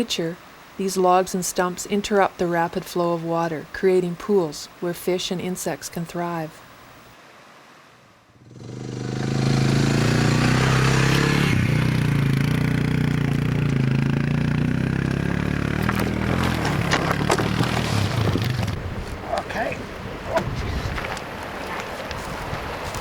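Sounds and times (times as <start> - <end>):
heavy machine engine under load: 9.2 - 18.8.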